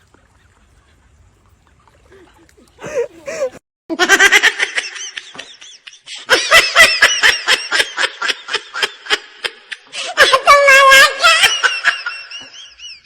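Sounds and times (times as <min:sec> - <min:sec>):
person laughing hard: 0:02.8 - 0:04.5.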